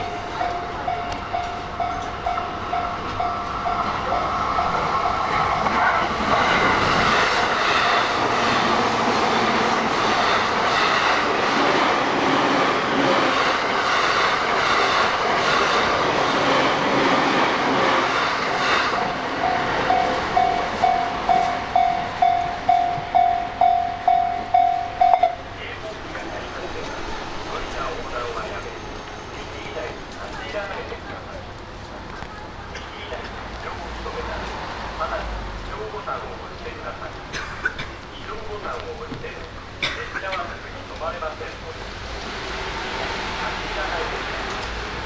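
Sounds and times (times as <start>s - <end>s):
level-crossing warning bell: 0.0s - 11.2s, 17.8s - 30.5s
train running past: 0.0s - 45.0s.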